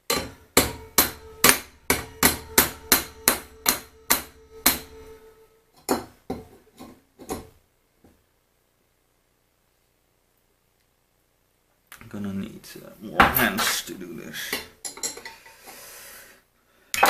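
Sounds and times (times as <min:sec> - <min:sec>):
hammer striking steel: 0:00.0 - 0:06.5.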